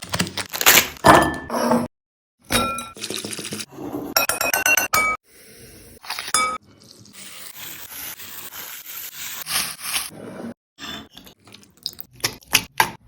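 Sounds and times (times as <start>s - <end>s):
utensils and dishes clinking: 6.1s - 6.6s.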